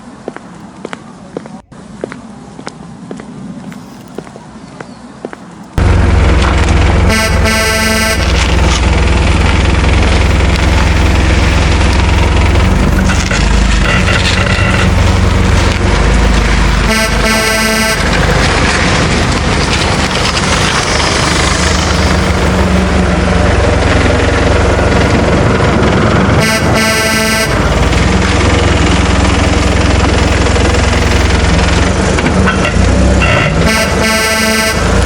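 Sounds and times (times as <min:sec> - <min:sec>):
vehicle engine rumbling: 0:00.0 - 0:35.0
horn honking: 0:06.9 - 0:08.9, 0:13.0 - 0:15.7, 0:16.3 - 0:18.7, 0:26.2 - 0:28.4, 0:32.6 - 0:35.0.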